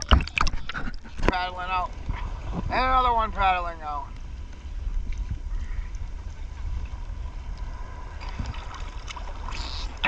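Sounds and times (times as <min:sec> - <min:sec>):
wind buffeting microphone: 0:00.0 - 0:10.0
ocean surf: 0:05.4 - 0:10.0.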